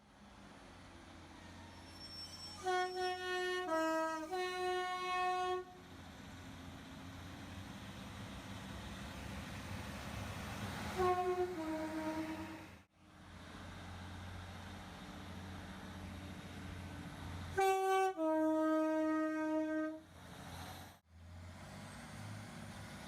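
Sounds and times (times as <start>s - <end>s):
low train rumble: 0.0s - 23.0s
train horn chord: 2.6s - 5.8s, 11.0s - 12.7s, 17.6s - 20.0s.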